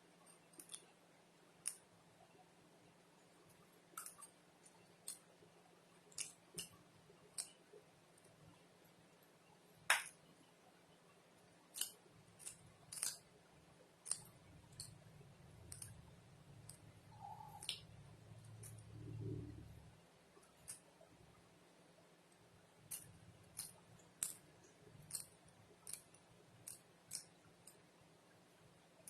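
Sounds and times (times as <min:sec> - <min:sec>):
eating clicks and ticks: 0:00.2 - 0:00.9, 0:03.9 - 0:05.3, 0:06.1 - 0:08.4, 0:11.7 - 0:13.3, 0:14.0 - 0:21.0, 0:22.8 - 0:27.9.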